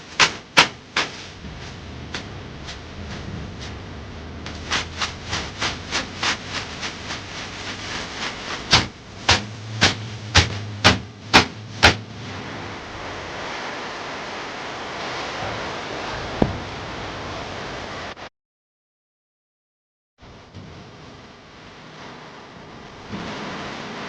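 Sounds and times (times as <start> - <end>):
bath brooms striking a body: 8.2 - 12.0.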